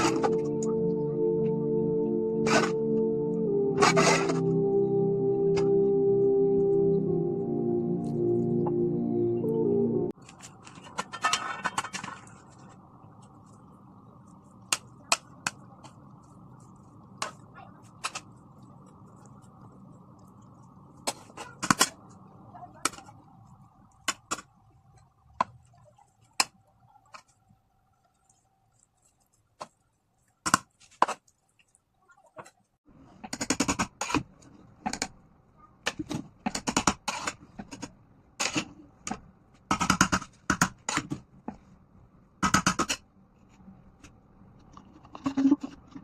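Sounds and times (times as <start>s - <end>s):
utensil scraping a pot: 3.8s - 4.5s.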